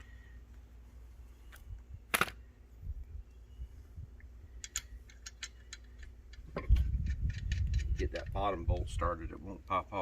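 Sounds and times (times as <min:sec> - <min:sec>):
lug bolts clicking: 0:04.6 - 0:08.4.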